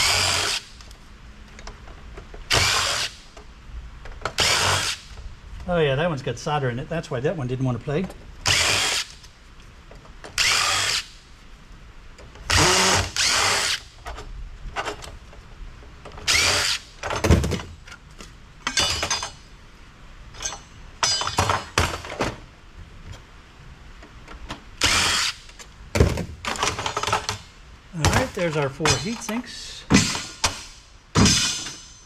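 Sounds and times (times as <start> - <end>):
power drill spinning screws: 0.0 - 0.7, 2.5 - 3.2, 4.4 - 5.0, 8.4 - 9.2, 10.4 - 11.1, 12.5 - 13.9, 16.2 - 16.8, 24.8 - 25.6.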